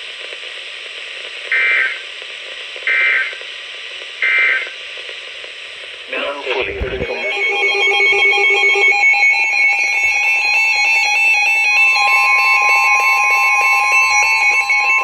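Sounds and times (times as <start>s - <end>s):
steady lower alarm tone: 6.1s - 15.0s
electronic alarm switching pitch: 6.5s - 15.0s.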